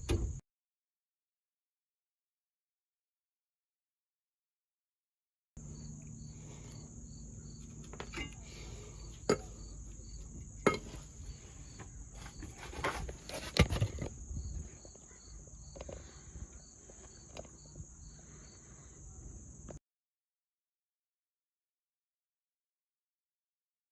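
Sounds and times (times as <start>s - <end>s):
insects droning and chirping: 5.6s - 19.8s
sharp knocks and clanks: 7.8s - 9.7s, 10.6s - 14.1s.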